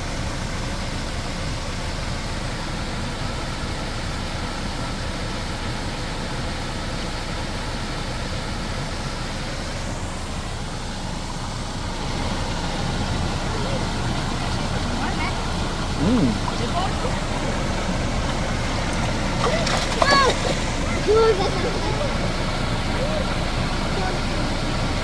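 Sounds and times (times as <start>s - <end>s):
vehicle engine idling: 0.0s - 25.0s
broad rushing noise: 9.6s - 25.0s.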